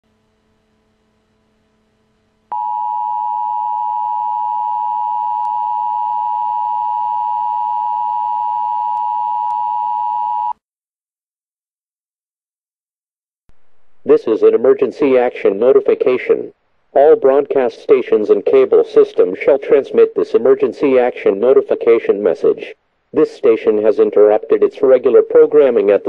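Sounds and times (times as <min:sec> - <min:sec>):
faint hum: 0:00.1 - 0:10.5, 0:13.5 - 0:26.0
two-tone alarm: 0:02.5 - 0:10.6.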